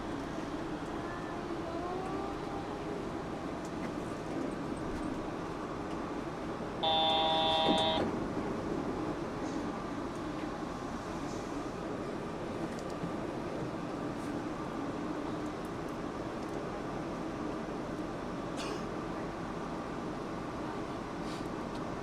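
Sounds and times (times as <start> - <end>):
train interior running noise: 0.0 - 22.0
electronic door buzzer tone: 6.8 - 8.0.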